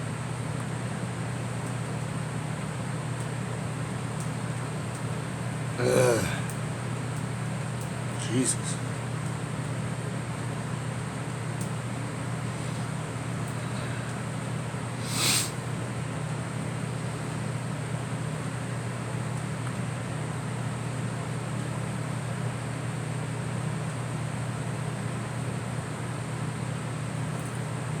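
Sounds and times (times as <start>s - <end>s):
low mechanical hum: 0.0s - 28.0s
short hissing burst: 15.0s - 15.6s.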